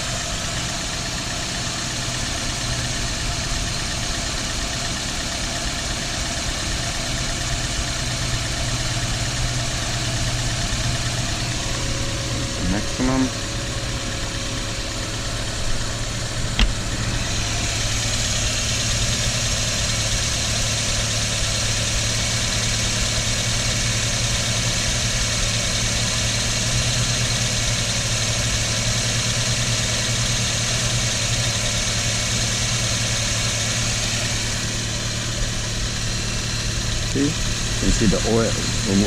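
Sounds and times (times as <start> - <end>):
car engine idling: 0.0 - 39.0.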